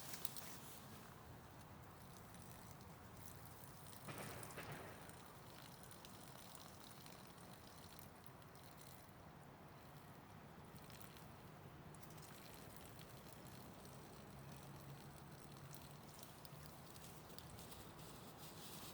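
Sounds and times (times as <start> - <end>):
soft rustle: 0.0 - 3.6, 16.1 - 18.9.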